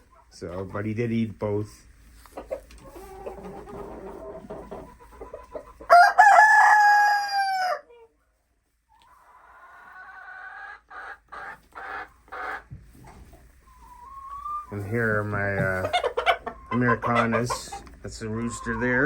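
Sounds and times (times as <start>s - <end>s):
hens clucking: 0.0s - 8.2s, 8.9s - 19.0s
chicken calls: 2.1s - 8.2s, 8.9s - 19.0s
rooster crowing: 5.9s - 7.9s.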